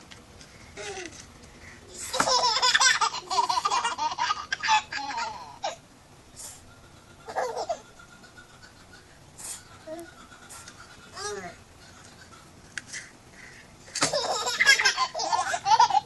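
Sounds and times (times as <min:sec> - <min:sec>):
baby giggling: 0:07.0 - 0:12.5, 0:14.0 - 0:16.0.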